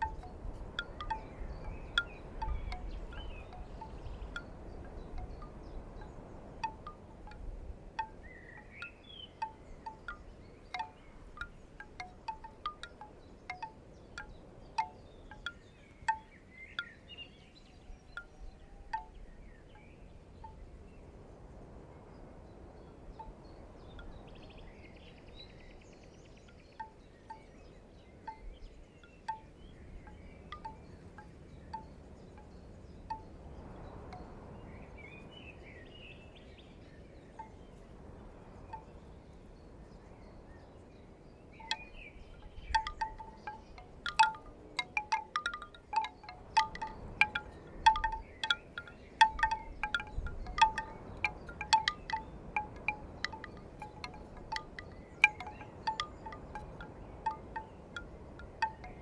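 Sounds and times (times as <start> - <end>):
bamboo wind chime knocking: 0.0 - 17.1, 17.9 - 19.3, 26.5 - 27.5, 28.3 - 33.3, 38.7 - 38.9, 41.6 - 59.0
low wind rumble: 0.0 - 59.0.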